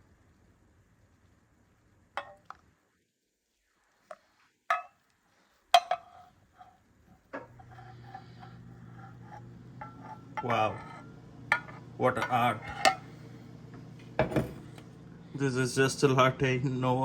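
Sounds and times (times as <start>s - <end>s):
metal pitcher clinking: 2.2s - 2.6s, 4.7s - 5.0s, 5.8s - 6.8s, 7.4s - 13.1s
steady low hum: 5.8s - 17.0s.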